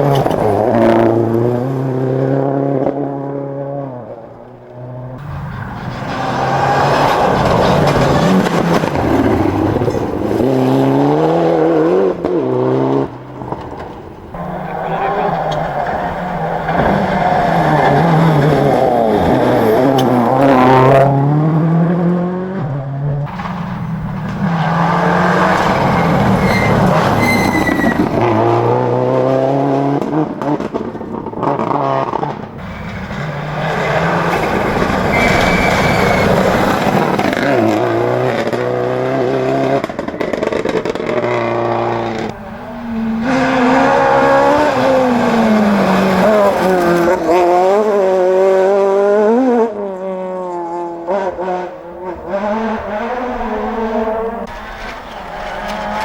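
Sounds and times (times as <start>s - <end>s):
rally car engines revving: 0.0s - 56.0s
tyre squeals: 14.4s - 20.2s, 23.3s - 28.4s, 32.6s - 37.8s.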